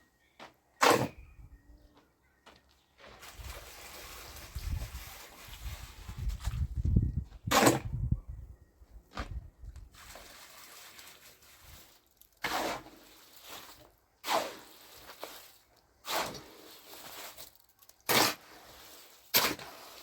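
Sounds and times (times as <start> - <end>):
water sloshing in a bucket: 9.9 - 17.6.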